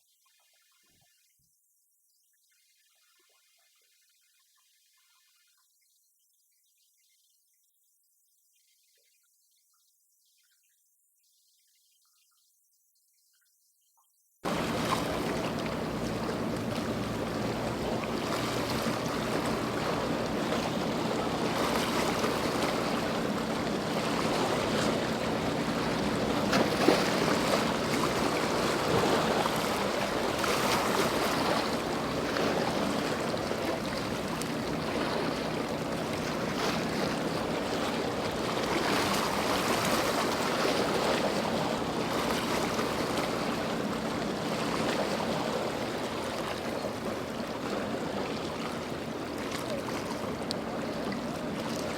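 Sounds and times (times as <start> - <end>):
boat engines running: 14.5 - 51.9
waves and water rushing: 14.5 - 51.9
wind on microphone: 14.5 - 51.9.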